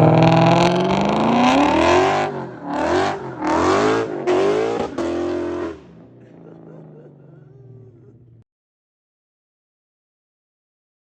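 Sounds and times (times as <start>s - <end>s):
car engine revving hard: 0.0s - 7.1s.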